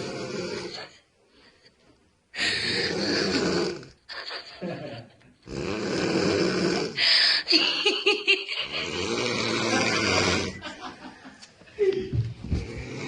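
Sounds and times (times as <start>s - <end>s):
woman snoring: 0.0s - 0.9s, 2.4s - 4.0s, 5.5s - 7.4s, 8.6s - 10.6s, 12.6s - 13.0s.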